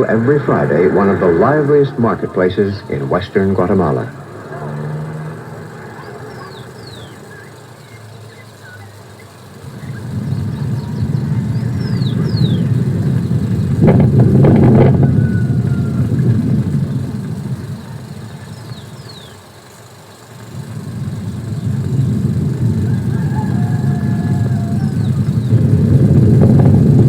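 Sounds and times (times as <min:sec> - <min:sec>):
high falling chirps: 0:00.0 - 0:12.8
vehicle engine rumble passing: 0:00.0 - 0:27.0.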